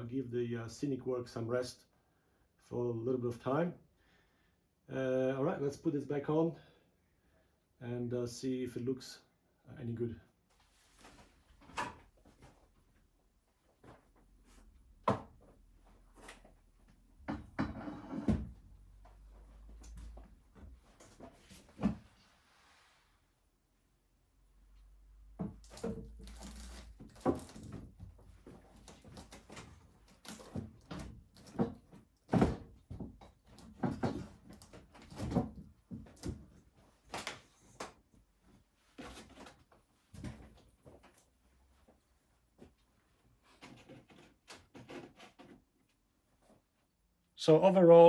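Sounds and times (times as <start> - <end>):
knocks and bumps: 17.2 - 22.0.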